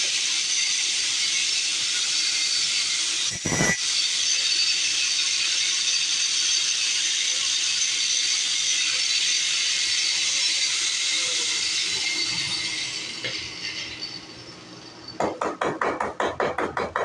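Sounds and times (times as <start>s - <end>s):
welding arc crackling hiss: 0.0s - 14.6s.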